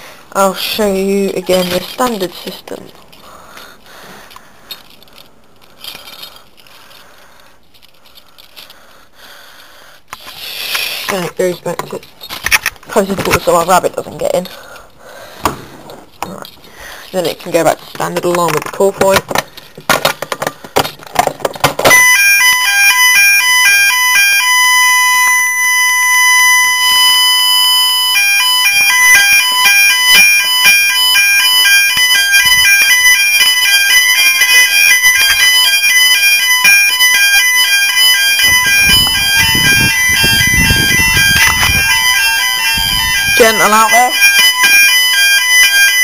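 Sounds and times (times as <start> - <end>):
fire alarm sounder: 21.8 - 46.0.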